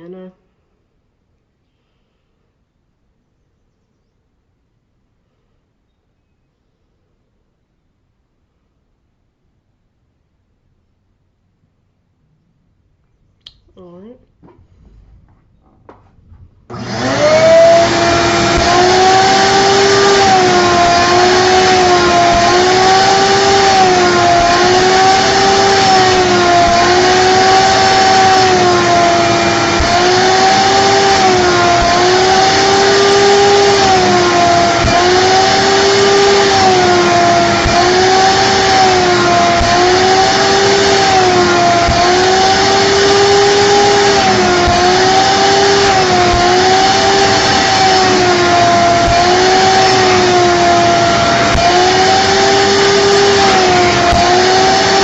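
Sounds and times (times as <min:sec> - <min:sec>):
shop vacuum running: 0:15.9 - 0:55.0.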